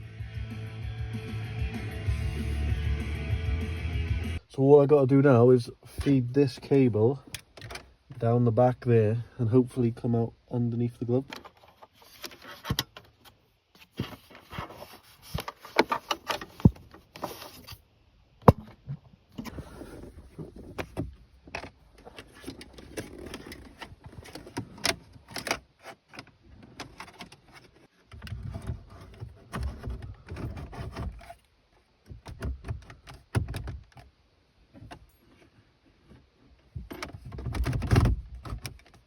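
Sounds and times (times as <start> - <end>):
cable rustling and scraping: 21.9 - 31.5.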